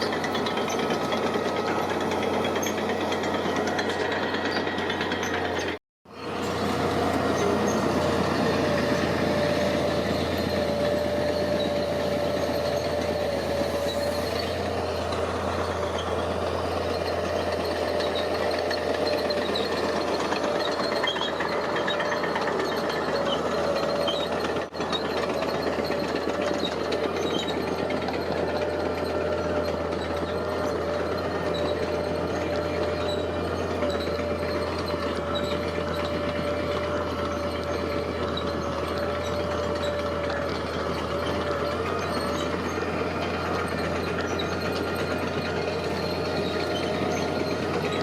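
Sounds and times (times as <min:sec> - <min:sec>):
diesel engine drone: 0:00.0 - 0:48.0
mid-pitched machine whine: 0:00.0 - 0:48.0.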